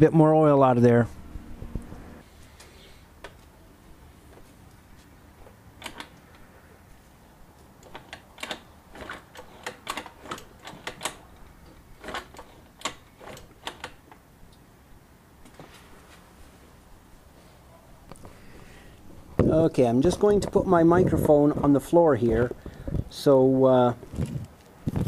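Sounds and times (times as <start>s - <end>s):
kickstarter clicks and clunks: 5.4s - 6.5s, 7.8s - 14.2s.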